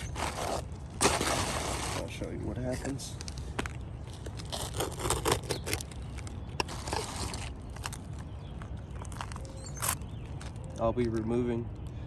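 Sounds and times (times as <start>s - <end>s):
light scrapes and handling: 0.0s - 3.5s, 4.1s - 8.1s.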